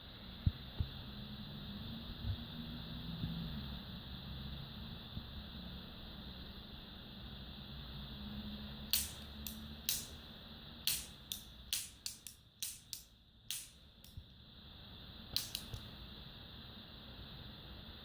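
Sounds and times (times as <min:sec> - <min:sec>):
steady hiss: 0:04.0 - 0:18.0
folding knife clicking: 0:08.9 - 0:10.2, 0:10.9 - 0:13.8, 0:15.4 - 0:15.8.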